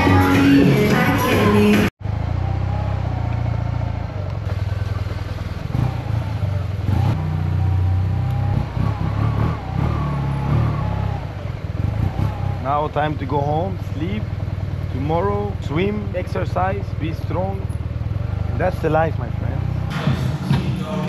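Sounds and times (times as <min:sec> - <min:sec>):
music with singing: 0:00.0 - 0:01.9, 0:19.9 - 0:21.0
motorbike engine running: 0:02.0 - 0:21.0.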